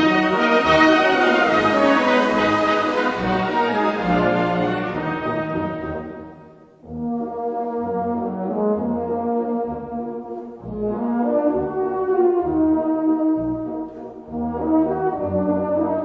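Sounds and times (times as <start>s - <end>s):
orchestral brass music: 0.0s - 16.0s.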